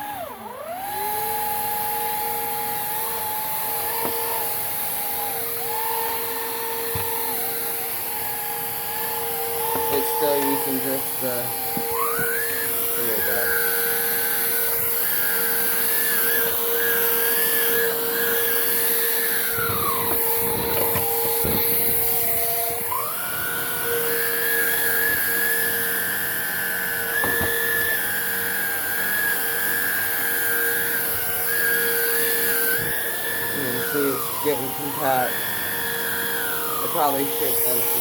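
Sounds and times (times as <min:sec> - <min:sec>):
vacuum motor whining: 0:00.0 - 0:38.0
vacuum knocking against surface: 0:06.9 - 0:07.3, 0:27.2 - 0:27.7.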